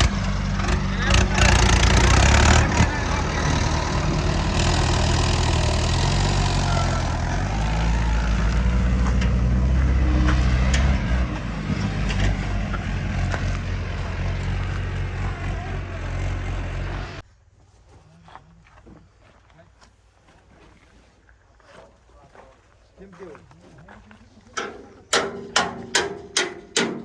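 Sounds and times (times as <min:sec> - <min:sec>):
heavy diesel engine running: 0:00.0 - 0:17.2.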